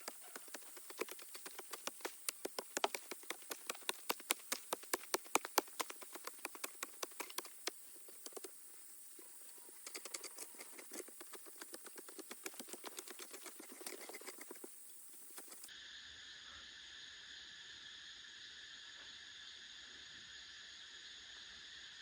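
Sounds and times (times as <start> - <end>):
sharp taps or knocks: 0.0 - 8.5
insects chirring: 0.0 - 22.0.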